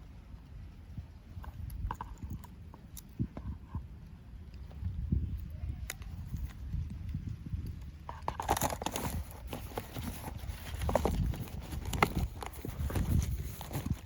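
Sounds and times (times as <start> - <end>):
trash crunching and clicking: 8.1 - 14.0.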